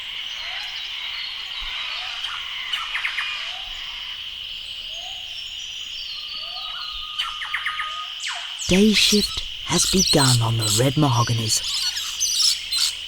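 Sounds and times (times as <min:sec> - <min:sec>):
high insect drone: 0:00.0 - 0:13.0
bird chirps: 0:08.6 - 0:13.0.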